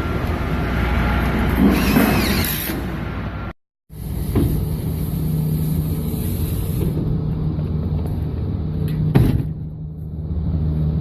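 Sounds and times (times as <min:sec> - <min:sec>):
low motor rumble: 0:04.0 - 0:11.0.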